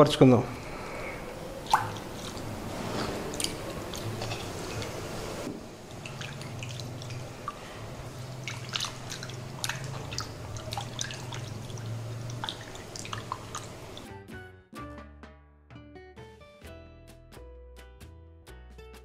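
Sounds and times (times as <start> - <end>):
low steady hum: 0.0 - 14.1
prawns rinsed in water splashing: 1.3 - 14.1
music: 14.0 - 19.0.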